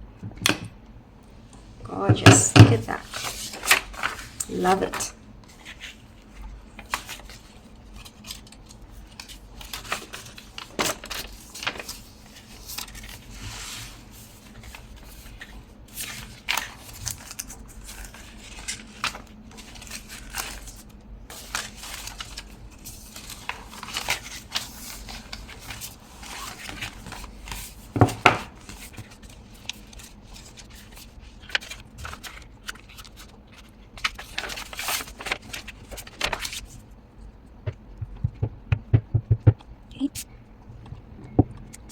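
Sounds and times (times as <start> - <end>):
paper rustling: 2.3 - 36.9
knock on table: 37.7 - 39.6.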